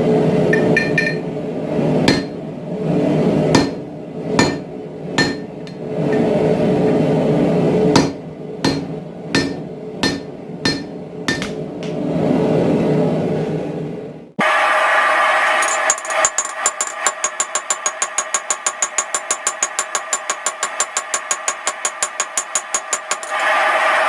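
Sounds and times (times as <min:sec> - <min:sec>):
steady drone: 0:00.0 - 0:12.7
hammer striking steel on anvil: 0:00.5 - 0:01.2, 0:02.1 - 0:02.4, 0:03.6 - 0:06.3, 0:07.9 - 0:12.0, 0:15.7 - 0:23.4.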